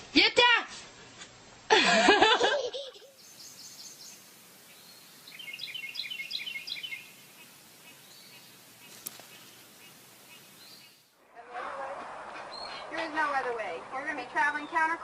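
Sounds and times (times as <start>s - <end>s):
steady background noise: 0.0s - 15.0s
small bird chirping: 3.1s - 11.1s.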